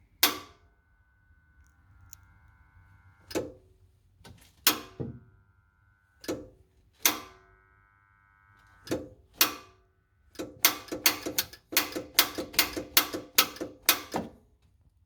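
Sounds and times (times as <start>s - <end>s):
sharp mechanical clicks: 10.4s - 14.2s.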